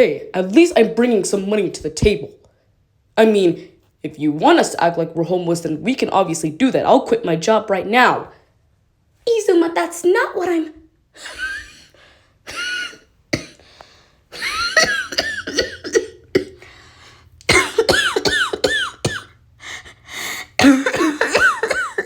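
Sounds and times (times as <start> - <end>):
woman coughing: 12.5 - 13.7, 14.4 - 16.7, 17.5 - 19.4, 20.5 - 22.0.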